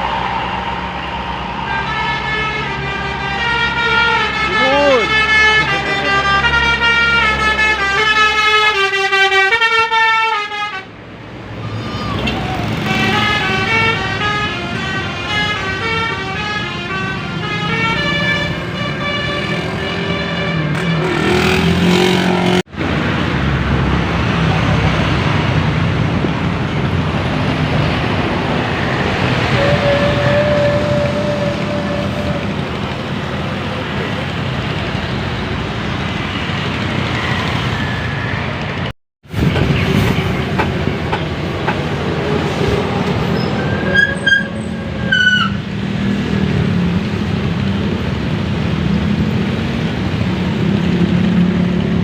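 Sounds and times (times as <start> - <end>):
buses passing with engine roar: 0.0 - 52.0
bus musical air horn tune: 1.6 - 10.9, 12.8 - 21.3, 29.4 - 32.8.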